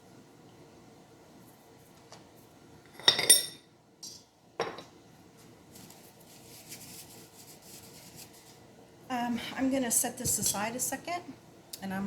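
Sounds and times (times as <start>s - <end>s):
metal clinking on a bowl: 3.0s - 4.8s.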